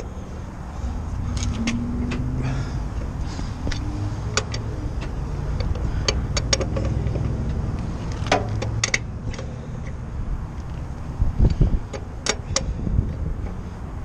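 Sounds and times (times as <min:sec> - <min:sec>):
low engine rumble: 0:00.0 - 0:14.0.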